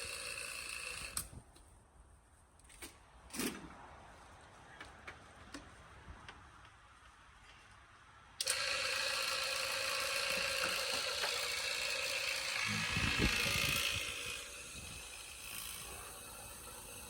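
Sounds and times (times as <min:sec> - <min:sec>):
small motor whirring: 0:00.0 - 0:01.3, 0:08.4 - 0:17.0.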